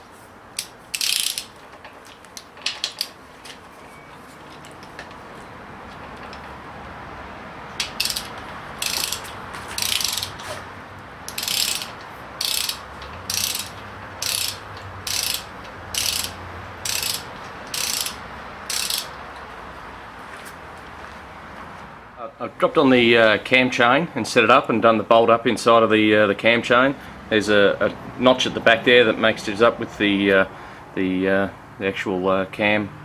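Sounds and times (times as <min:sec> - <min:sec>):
torque wrench ratcheting: 0:00.6 - 0:01.6, 0:07.8 - 0:10.5, 0:11.3 - 0:19.2.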